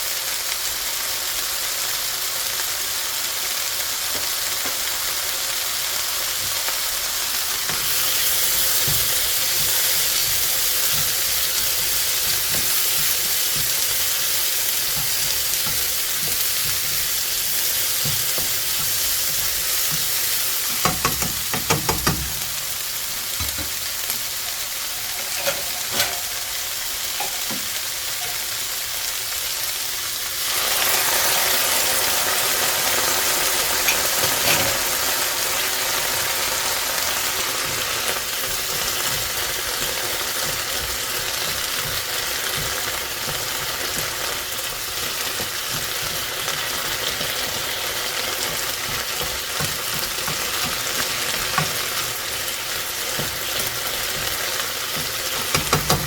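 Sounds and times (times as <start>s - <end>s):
food sizzling in a frying pan: 0.0s - 56.0s
utensil clicking against pan: 7.7s - 22.7s, 33.8s - 35.0s, 37.3s - 56.0s.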